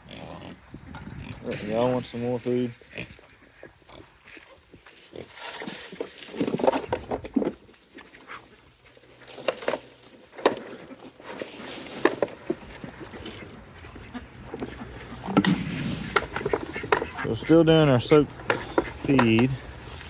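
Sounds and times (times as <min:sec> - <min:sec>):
chickens and ducks calling: 0:10.7 - 0:20.0.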